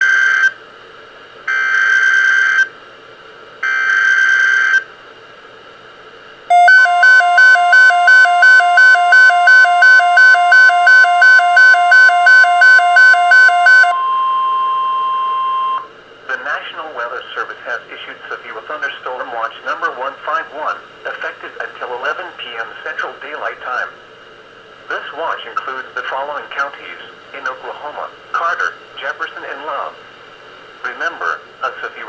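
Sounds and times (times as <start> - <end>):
buzzing data bursts: 6.5 - 13.9
pulsing electronic beep: 6.5 - 15.9
steady warning alarm tone: 6.5 - 15.9.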